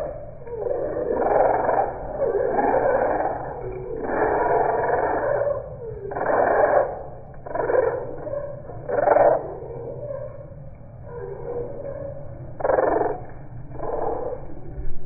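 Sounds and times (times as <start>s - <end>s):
slowed budgie calls: 0.5s - 10.4s, 12.6s - 14.6s.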